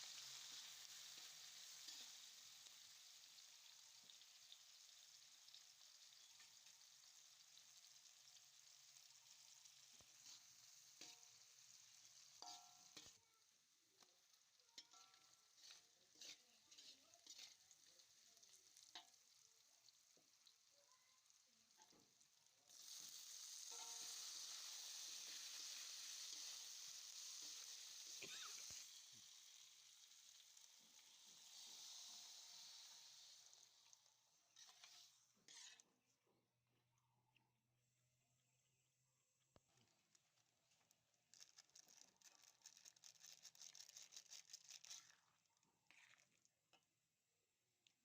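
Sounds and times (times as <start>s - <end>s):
food sizzling in hot oil: 0.0s - 35.9s, 39.7s - 46.7s.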